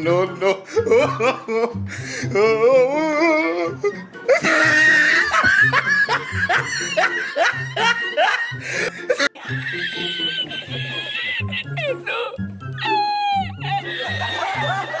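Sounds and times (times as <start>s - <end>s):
background music with beat: 0.0s - 15.0s
laughter: 0.7s - 1.8s, 4.3s - 15.0s.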